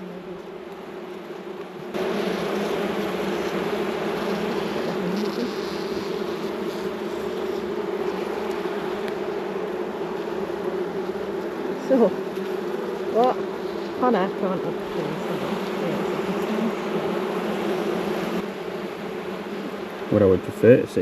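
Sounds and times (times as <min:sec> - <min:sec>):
bees buzzing: 0:00.0 - 0:21.0.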